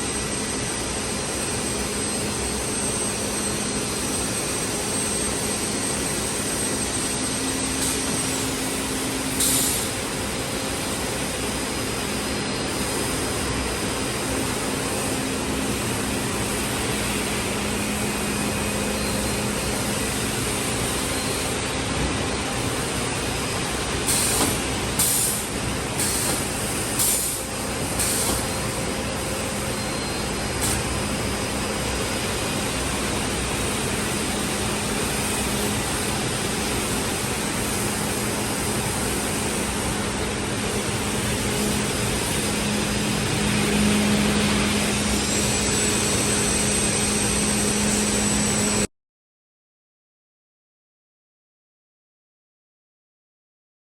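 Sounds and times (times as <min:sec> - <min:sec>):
compressed air hisses: 0:09.4 - 0:10.0, 0:24.1 - 0:28.5
panel saw humming and whining: 0:27.4 - 0:48.9.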